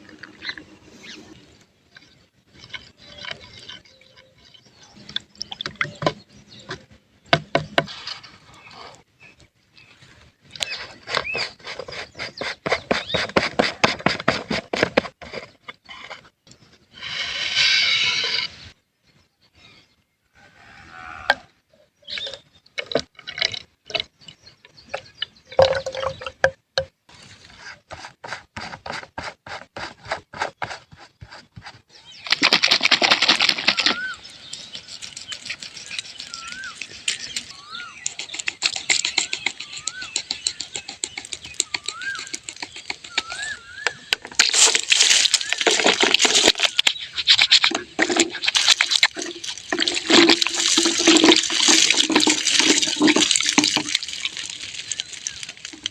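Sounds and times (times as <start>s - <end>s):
water pouring and splashing: 32.2s - 37.8s, 44.3s - 55.9s.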